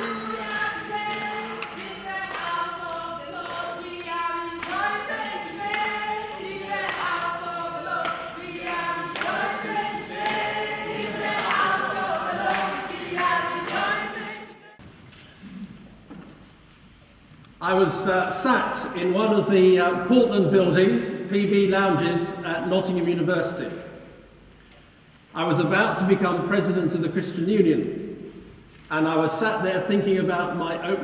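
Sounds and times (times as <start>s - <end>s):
choir singing: 0.0s - 14.8s.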